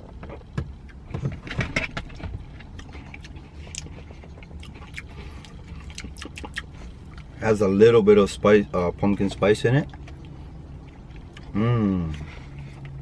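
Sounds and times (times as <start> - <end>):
steady low hum: 0.0 - 13.0
chewing: 2.1 - 7.4, 9.8 - 13.0.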